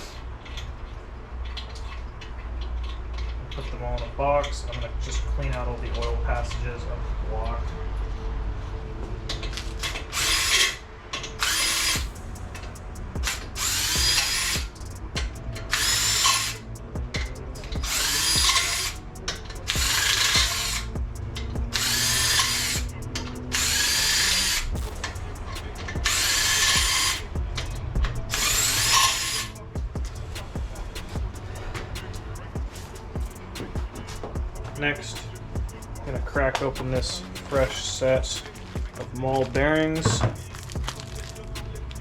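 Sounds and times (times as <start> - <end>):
compressed air blasts hissing: 11.5 - 42.0.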